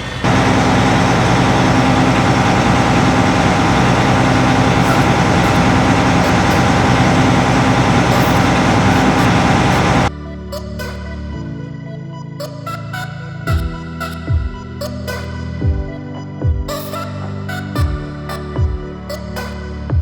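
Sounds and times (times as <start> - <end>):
diesel farm machinery running: 0.0 - 10.1.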